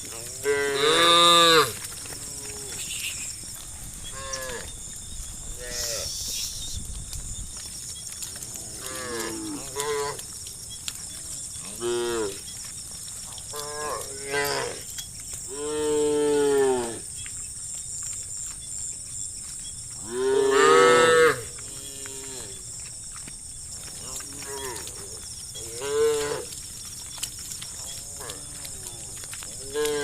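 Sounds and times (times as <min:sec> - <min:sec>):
cows mooing: 0:00.1 - 0:02.9, 0:08.4 - 0:10.3, 0:11.1 - 0:12.5, 0:13.5 - 0:14.9, 0:15.5 - 0:17.1, 0:20.0 - 0:22.6, 0:24.0 - 0:26.6, 0:27.7 - 0:30.0.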